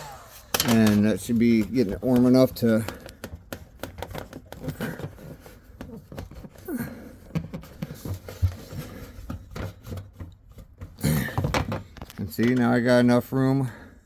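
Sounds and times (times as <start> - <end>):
rubber hose clicking and rubbing: 0.2 - 12.7.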